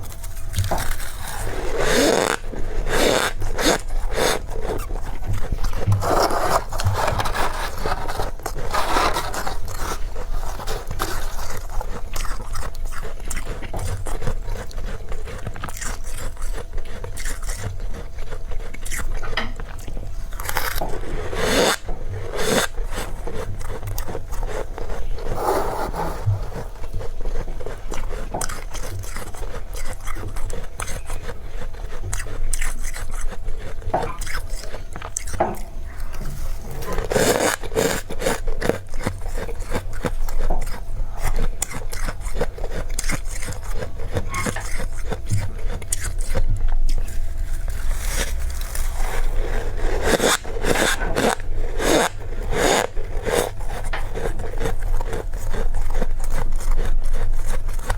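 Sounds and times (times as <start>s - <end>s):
scraping: 0.0s - 12.4s
frost being chewed crunchily: 0.0s - 57.9s.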